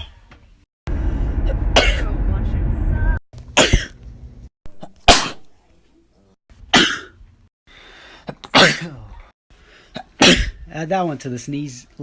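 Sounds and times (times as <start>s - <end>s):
person sneezing: 10.0s - 10.6s.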